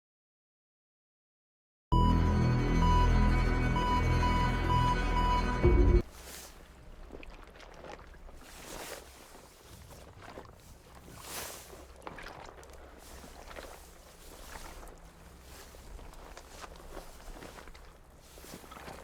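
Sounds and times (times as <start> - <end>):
water sloshing around boat: 6.0 - 19.0.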